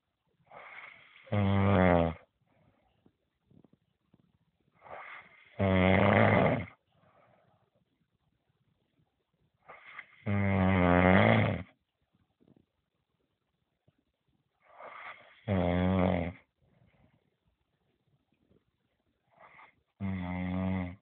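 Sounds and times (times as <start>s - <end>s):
person snoring: 0.5s - 2.2s, 4.8s - 6.8s, 9.7s - 11.7s, 14.7s - 16.4s, 19.4s - 21.0s.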